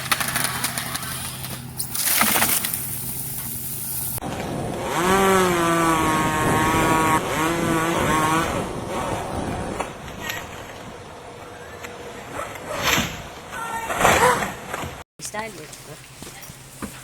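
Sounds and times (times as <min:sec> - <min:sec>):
chainsaw engine revving: 0:04.6 - 0:09.8.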